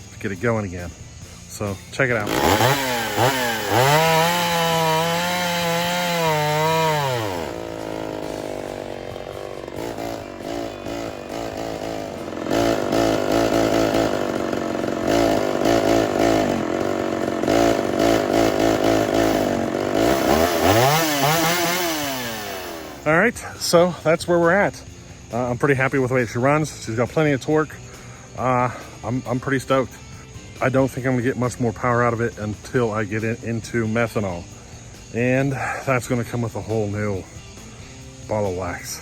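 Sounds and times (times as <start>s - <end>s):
chainsaw revving: 2.0s - 23.2s.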